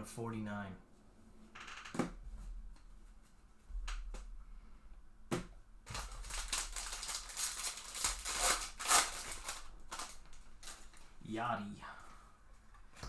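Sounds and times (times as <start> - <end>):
foil wrapper crinkling: 5.9 - 11.2.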